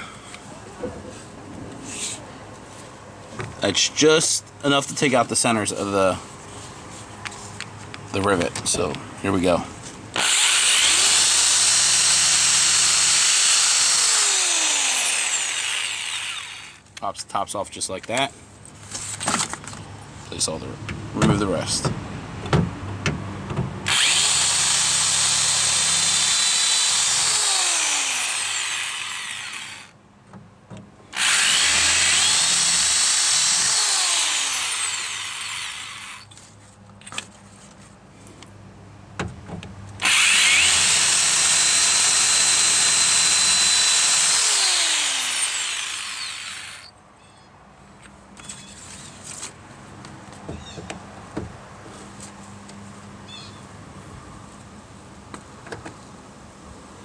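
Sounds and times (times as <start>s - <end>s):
power drill boring metal: 10.2s - 16.8s, 23.9s - 30.0s, 31.2s - 36.3s, 40.0s - 46.9s
small handling knocks: 48.0s - 52.8s.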